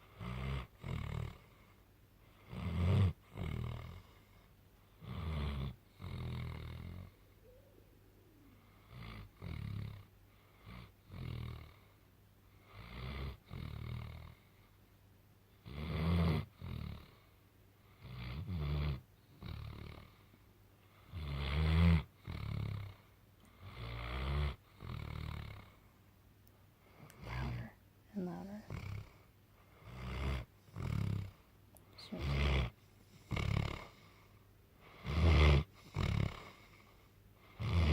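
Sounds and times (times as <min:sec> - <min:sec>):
dog snoring loudly: 0:00.0 - 0:01.5, 0:02.3 - 0:04.1, 0:05.0 - 0:07.2, 0:08.6 - 0:11.9, 0:12.6 - 0:14.4, 0:15.6 - 0:17.2, 0:18.0 - 0:20.2, 0:21.0 - 0:25.7, 0:28.7 - 0:29.2, 0:29.8 - 0:31.4, 0:32.0 - 0:34.1, 0:34.9 - 0:36.8, 0:37.4 - 0:37.9.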